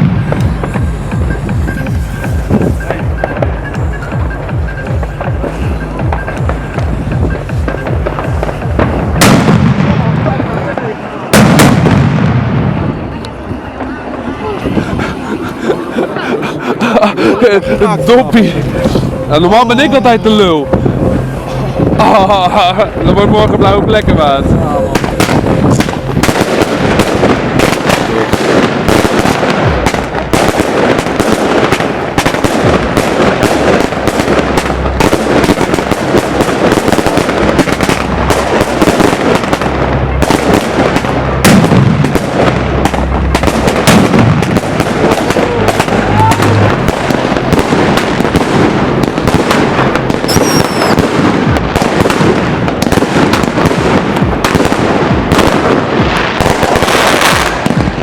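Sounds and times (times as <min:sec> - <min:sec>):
firework whistle: 0:00.0 - 0:09.4, 0:45.1 - 0:47.2, 0:50.2 - 0:51.2
fireworks bangs and crackle: 0:00.0 - 0:58.0.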